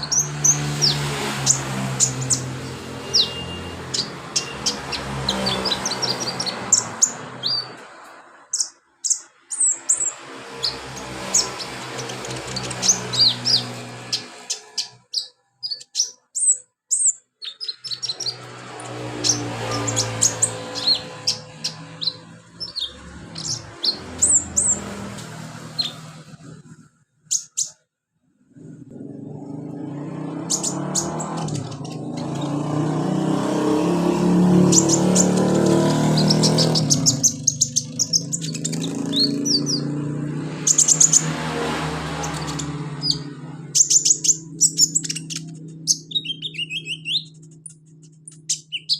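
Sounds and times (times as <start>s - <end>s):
bird chirping and trilling: 0.0s - 27.8s, 28.6s - 48.9s.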